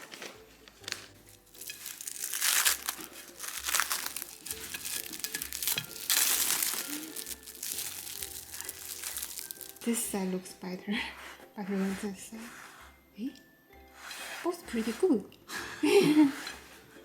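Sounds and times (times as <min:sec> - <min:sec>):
wrapping sheet crinkling: 0:00.0 - 0:10.2.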